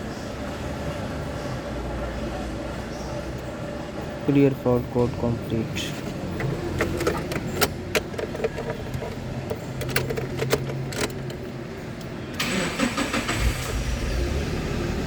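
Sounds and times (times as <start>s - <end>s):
car engine cranking and starting: 6.1s - 15.0s
keys rattling: 6.2s - 11.6s.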